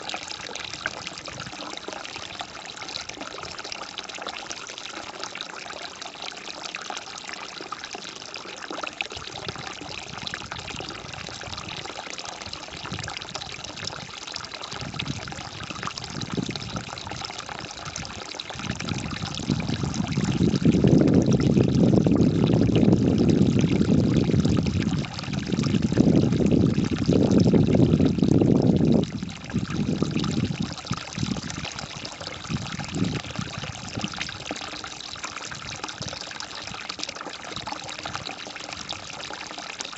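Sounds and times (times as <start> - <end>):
water trickling and splashing: 0.0 - 39.9
loud low water rush: 8.9 - 39.9.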